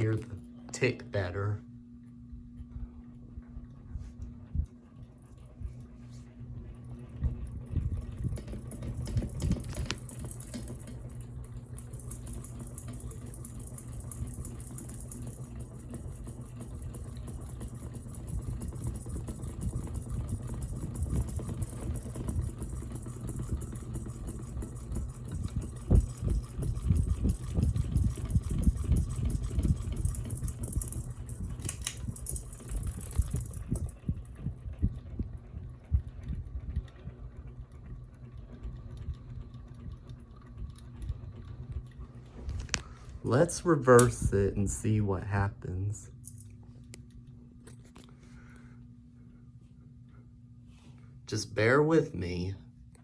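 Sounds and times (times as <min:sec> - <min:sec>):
ceiling fan clicks: 0:00.0 - 0:49.3
ceiling fan motor hum: 0:00.0 - 0:53.0.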